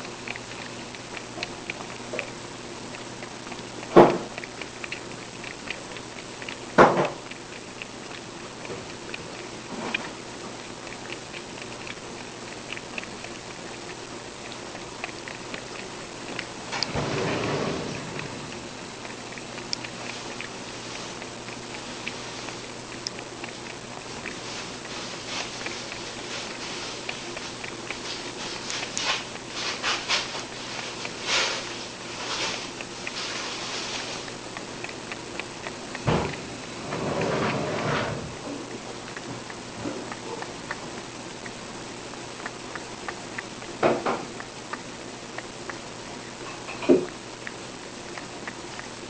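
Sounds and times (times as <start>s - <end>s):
cat lapping milk: 0.0s - 49.0s
rustling noises: 14.7s - 41.1s.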